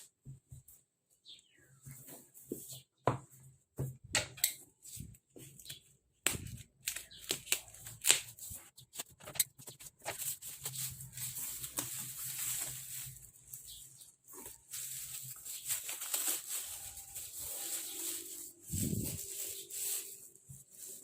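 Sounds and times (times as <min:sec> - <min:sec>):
rustling plastic wrap: 0:06.4 - 0:21.0.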